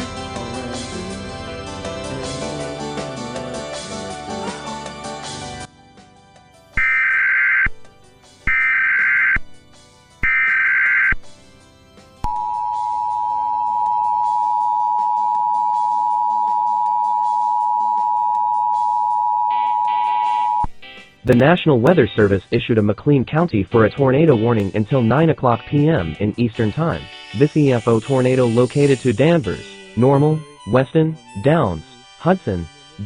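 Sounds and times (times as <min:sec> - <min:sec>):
warbling digital header bursts: 0:06.8 - 0:07.7, 0:08.5 - 0:09.4, 0:10.2 - 0:11.1.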